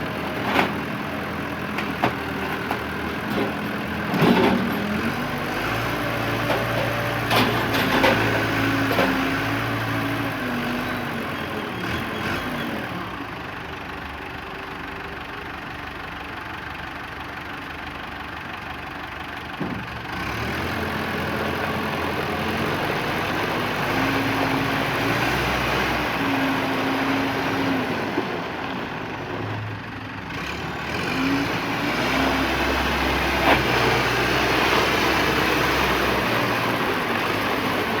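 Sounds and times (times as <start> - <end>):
diesel engine running: 0.0 - 38.0.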